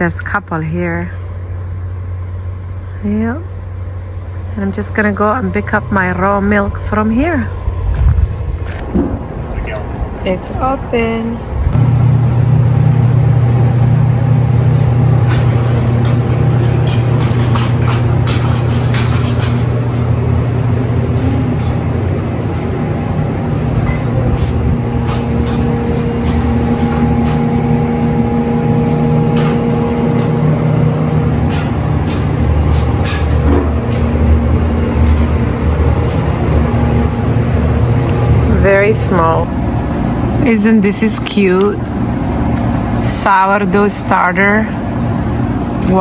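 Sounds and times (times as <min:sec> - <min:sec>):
higher steady tones: 0:00.0 - 0:15.2
low mechanical hum: 0:00.0 - 0:46.0.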